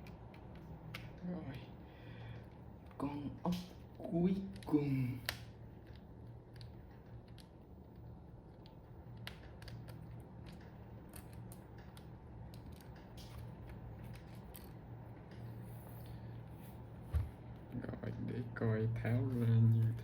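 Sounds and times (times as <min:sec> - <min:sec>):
steady low hum: 0:00.0 - 0:20.0
keyboard parts clicking and creaking: 0:03.8 - 0:16.2.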